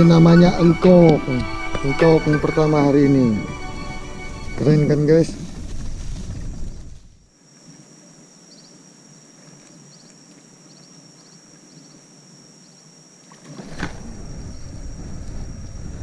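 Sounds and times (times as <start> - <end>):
steady high-pitched drone: 0.0 - 5.4
low rushing noise: 0.0 - 7.1.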